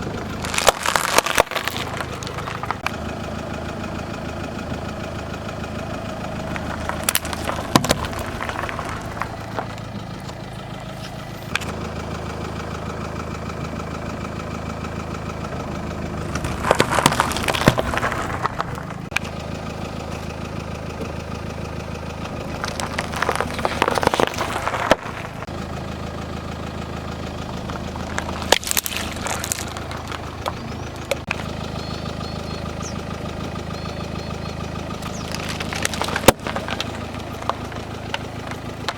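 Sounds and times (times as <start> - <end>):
tyres crushing objects: 0.0 - 2.9, 6.4 - 10.4, 16.2 - 19.2, 22.3 - 25.5, 27.7 - 31.5, 35.0 - 38.9
car engine idling: 0.0 - 38.9.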